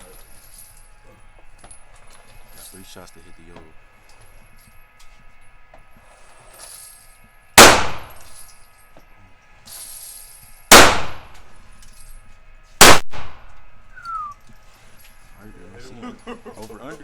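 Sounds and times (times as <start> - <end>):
gunshots: 7.6 - 8.4, 10.7 - 11.4, 12.8 - 13.6.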